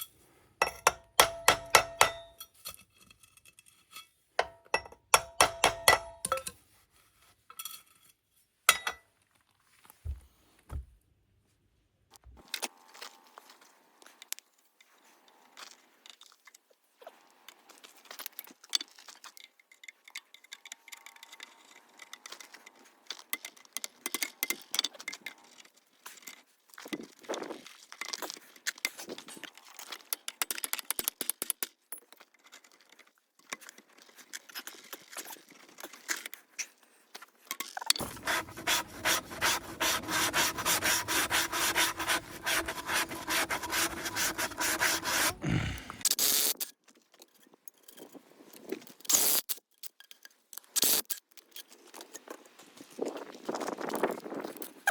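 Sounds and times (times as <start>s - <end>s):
fast back-and-forth rasping: 38.0s - 46.0s
scraping and rubbing: 38.0s - 46.0s.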